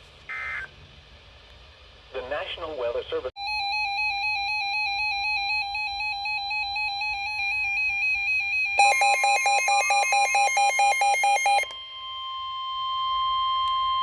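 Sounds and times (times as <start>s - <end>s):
loud pulsing beeps: 3.4s - 12.1s
steady alarm tone: 3.4s - 14.0s
warbling alert tone: 3.6s - 11.6s.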